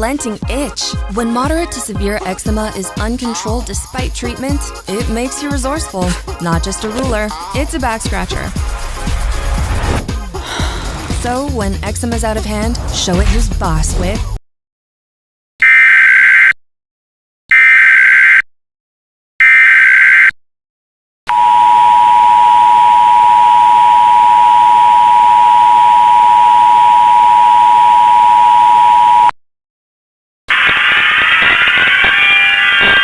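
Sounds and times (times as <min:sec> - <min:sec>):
two-tone alarm: 0:15.6 - 0:16.6, 0:17.5 - 0:18.4, 0:19.4 - 0:20.4, 0:21.3 - 0:29.3, 0:30.5 - 0:33.0
multi-tone signal: 0:21.3 - 0:29.3, 0:30.5 - 0:33.0
harsh digital data bursts: 0:30.5 - 0:33.0.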